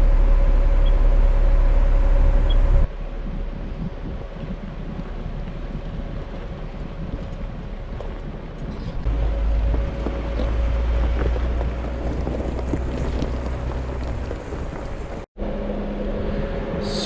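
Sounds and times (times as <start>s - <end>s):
engine and tyre rumble: 0.0s - 17.0s.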